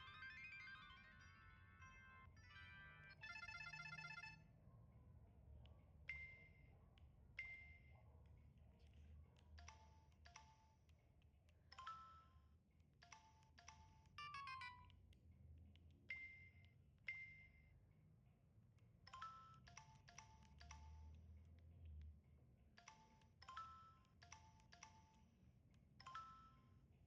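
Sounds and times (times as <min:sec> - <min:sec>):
phone ringtone melody: 0:00.0 - 0:04.4, 0:11.8 - 0:14.9, 0:19.1 - 0:21.2, 0:22.8 - 0:25.3, 0:26.0 - 0:26.8.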